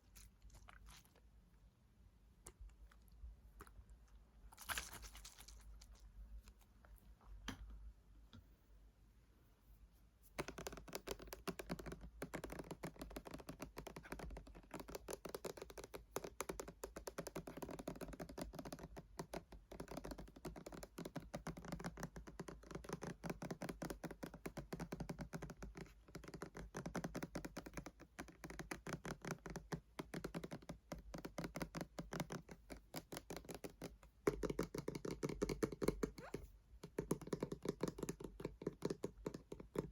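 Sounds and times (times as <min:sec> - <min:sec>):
fingernails tapping on plastic: 0:10.4 - 0:39.9.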